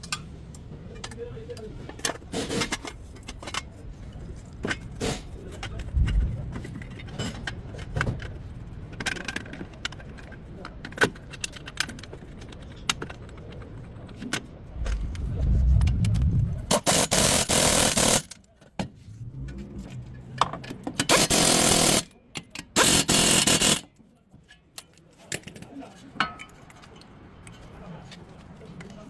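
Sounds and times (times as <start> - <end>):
low rumble: 14.6 - 17.5, 18.9 - 20.9
power tool running: 16.7 - 18.3, 22.8 - 23.8.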